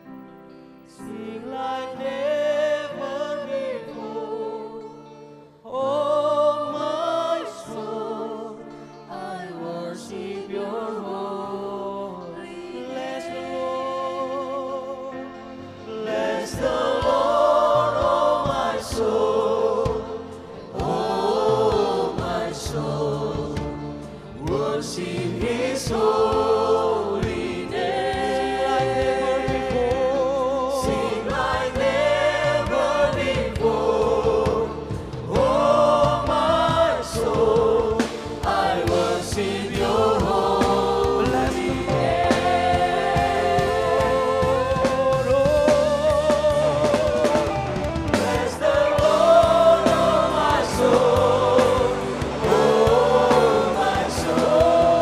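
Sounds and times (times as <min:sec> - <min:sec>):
congregation singing worship song: 0:00.0 - 0:55.0
band accompaniment: 0:15.2 - 0:55.0.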